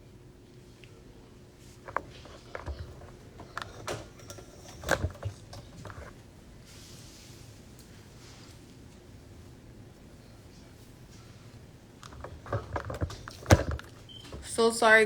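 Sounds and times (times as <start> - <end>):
objects being handled: 1.7 - 6.2, 12.0 - 14.6.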